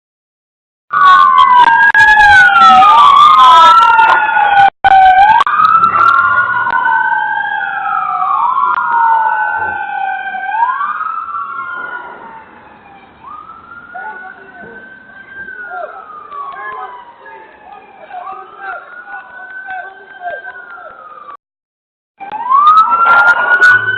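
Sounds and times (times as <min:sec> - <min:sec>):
police sirens wailing: 0:00.9 - 0:21.4, 0:22.2 - 0:23.9.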